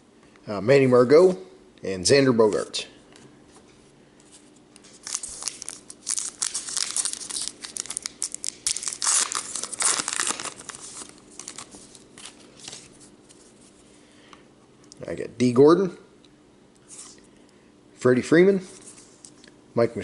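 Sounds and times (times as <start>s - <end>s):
wrapper tearing and crinkling: 4.8s - 12.9s.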